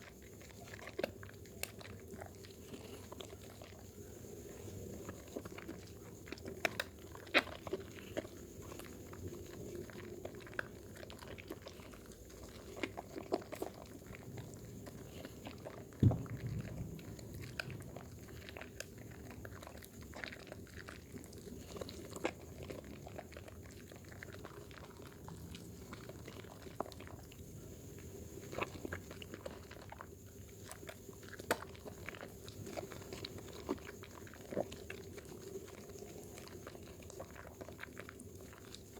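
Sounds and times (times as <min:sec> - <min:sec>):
thump: 0:16.0 - 0:18.2.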